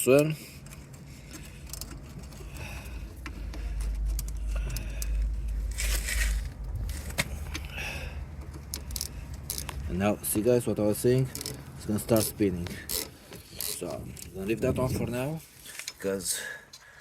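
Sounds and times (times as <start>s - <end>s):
low rumble: 0.5s - 12.9s
spanner clicking on metal: 8.4s - 9.8s.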